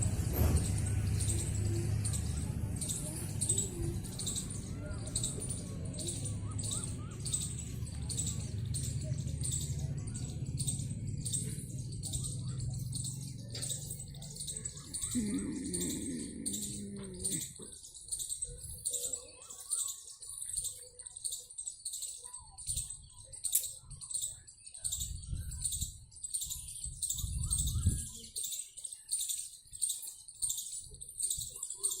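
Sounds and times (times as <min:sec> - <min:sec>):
faint chirps: 0:00.0 - 0:32.0
insect chirping pulses: 0:14.8 - 0:18.4.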